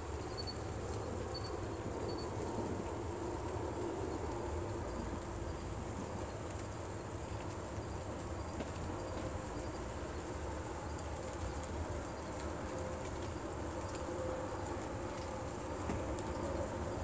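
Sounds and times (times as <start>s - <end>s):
crickets chirping: 0.0s - 2.6s.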